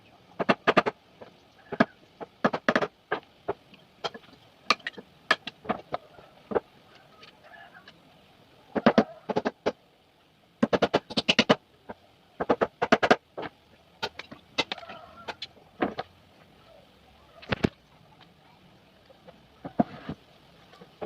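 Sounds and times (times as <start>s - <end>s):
sharp knocks on wooden boards: 0.4s - 1.0s, 1.7s - 5.9s, 8.8s - 9.8s, 10.6s - 11.6s, 12.4s - 14.8s.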